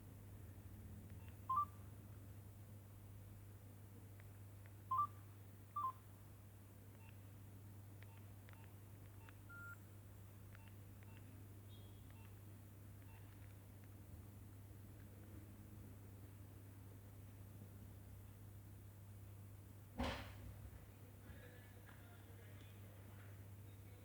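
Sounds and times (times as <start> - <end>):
phone keypad beeps: 1.2 - 1.7, 4.9 - 5.2, 5.8 - 6.0, 8.0 - 9.8.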